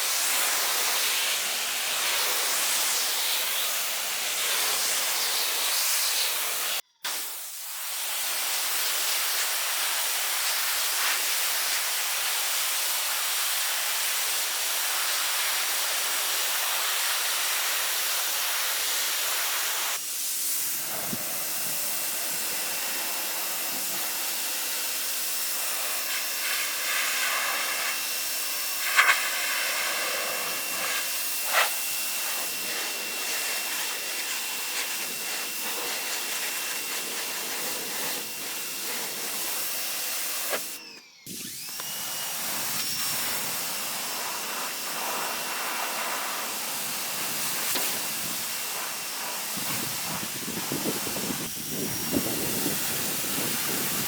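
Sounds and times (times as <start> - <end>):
pressure washer water jet hissing: 0.0 - 54.0
motor whine: 20.6 - 54.0.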